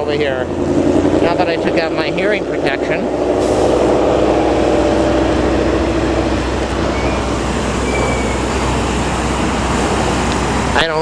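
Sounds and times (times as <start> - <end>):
pitched drone: 0.0 - 10.7
engine rumble: 0.0 - 11.0.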